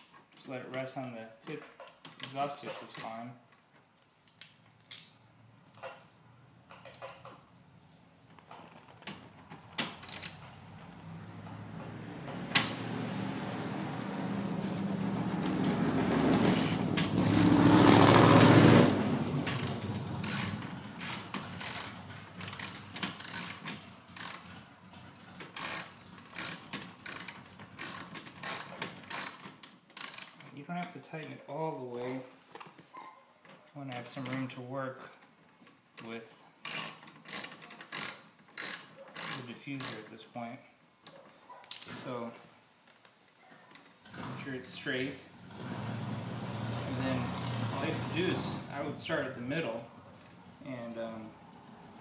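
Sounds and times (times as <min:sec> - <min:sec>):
hand ratchet clicking: 0:10.0 - 0:10.4, 0:16.4 - 0:24.5, 0:25.5 - 0:30.5, 0:36.6 - 0:40.1.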